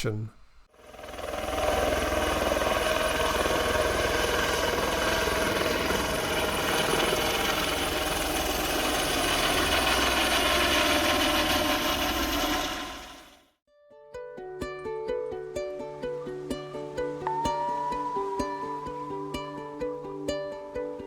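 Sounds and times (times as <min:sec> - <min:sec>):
loud engine running: 0:00.8 - 0:13.4.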